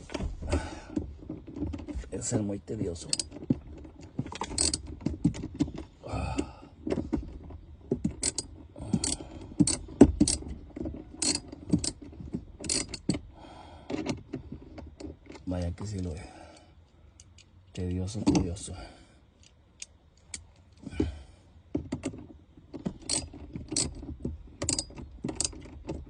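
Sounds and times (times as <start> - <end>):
hand tools and screws clinking: 3.0 - 3.4, 4.4 - 4.9, 8.1 - 10.5, 11.1 - 13.2, 22.9 - 26.0.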